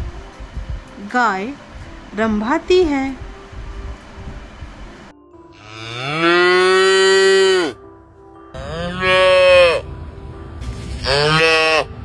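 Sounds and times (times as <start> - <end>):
cow mooing: 5.5 - 7.8, 8.5 - 9.9, 11.0 - 11.9.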